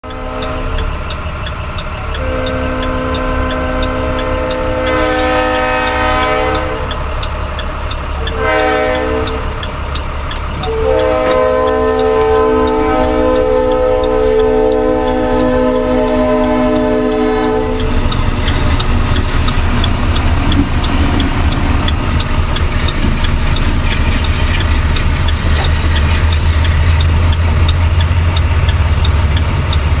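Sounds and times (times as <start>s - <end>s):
locomotive air horn: 0.0s - 1.0s, 2.0s - 7.2s, 8.2s - 9.6s, 10.6s - 18.0s
train rumble: 0.0s - 30.0s
wheels clattering over rails: 17.7s - 30.0s.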